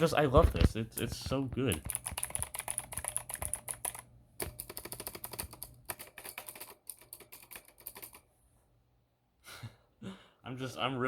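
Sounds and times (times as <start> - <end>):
mechanical keyboard typing: 1.0 - 8.3.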